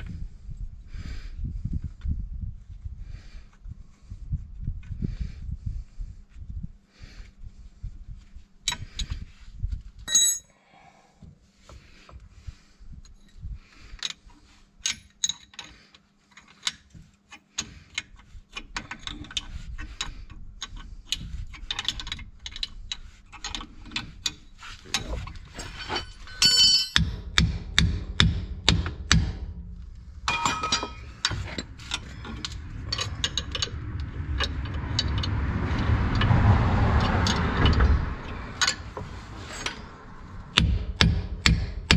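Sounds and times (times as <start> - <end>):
rough grinding noise: 23.0 - 26.9, 29.9 - 40.6
metal hand tools ratcheting: 30.3 - 36.3.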